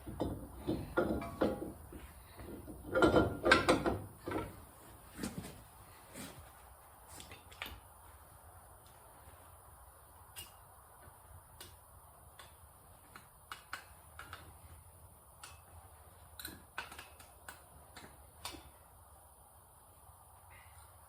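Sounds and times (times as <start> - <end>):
tools clicking and tapping: 0.0 - 1.8, 10.3 - 10.6, 11.6 - 14.6, 15.4 - 18.8.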